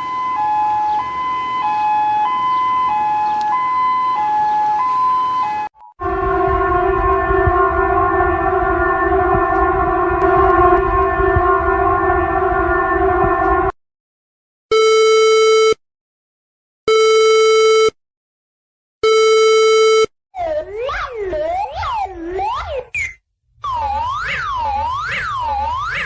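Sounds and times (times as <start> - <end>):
buzzy alarm tone: 5.3 - 13.8, 23.6 - 26.0.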